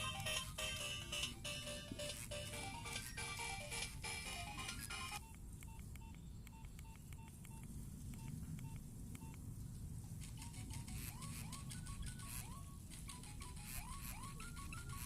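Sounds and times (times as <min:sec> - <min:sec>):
ringtone melody: 0:00.0 - 0:05.3, 0:10.4 - 0:15.0
upward-sliding ringtone tune: 0:00.0 - 0:05.3, 0:10.4 - 0:15.0
phone ringtone beeps: 0:00.0 - 0:07.6, 0:10.4 - 0:15.0.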